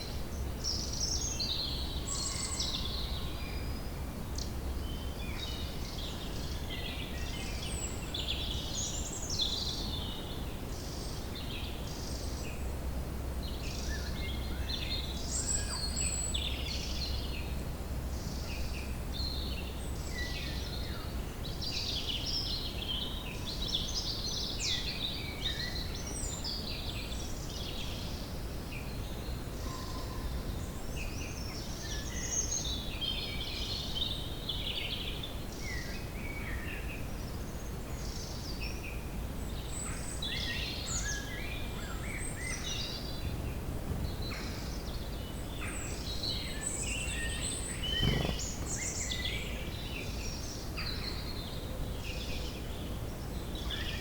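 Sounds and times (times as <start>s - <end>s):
songbirds chirping and trilling: 30.0s - 54.0s.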